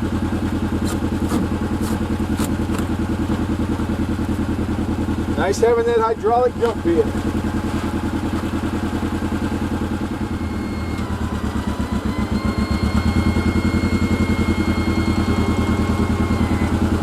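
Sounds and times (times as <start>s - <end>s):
engine idling: 0.0s - 17.0s
thin high whine: 10.3s - 17.0s.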